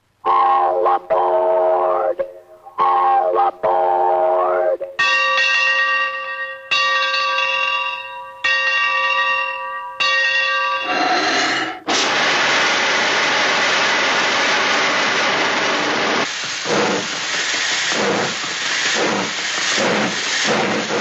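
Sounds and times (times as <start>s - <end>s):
bell ringing: 5.0s - 10.9s.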